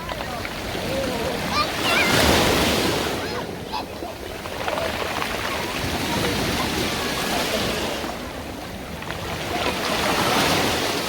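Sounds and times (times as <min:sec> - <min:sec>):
sea waves washing on shore: 0:00.0 - 0:11.0.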